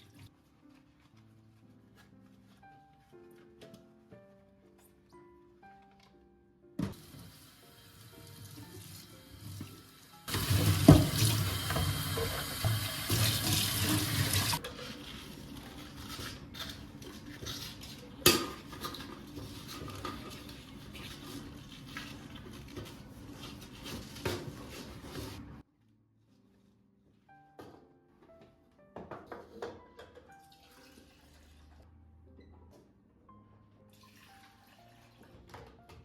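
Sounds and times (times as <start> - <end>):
tap running into sink: 8.4 - 14.6.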